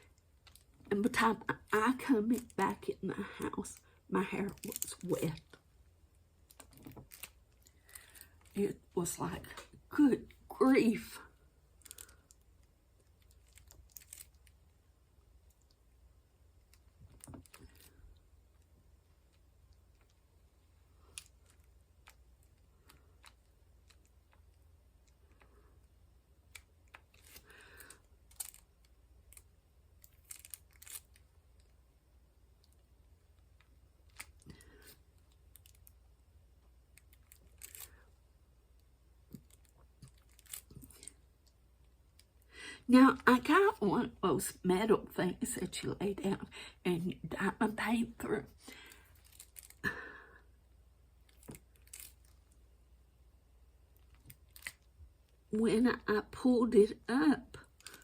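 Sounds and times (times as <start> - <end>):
small resin beads clicking: 11.8 - 14.6, 26.4 - 31.7, 36.9 - 38.0, 39.3 - 42.4, 51.2 - 52.6, 54.0 - 54.9.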